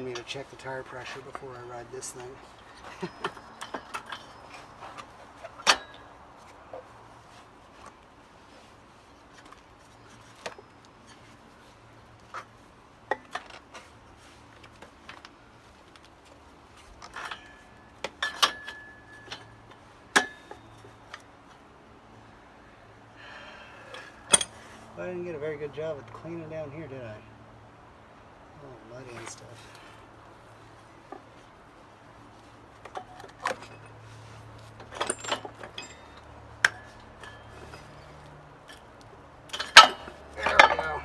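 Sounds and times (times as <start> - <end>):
metal tools clinking and knocking: 0.0 - 7.4, 16.8 - 21.3, 23.9 - 24.8, 32.8 - 41.0.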